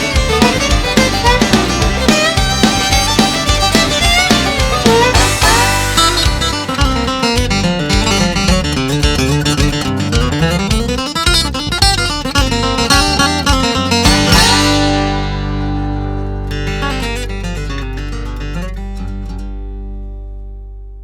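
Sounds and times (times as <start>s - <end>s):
acoustic guitar country music: 0.0s - 20.9s.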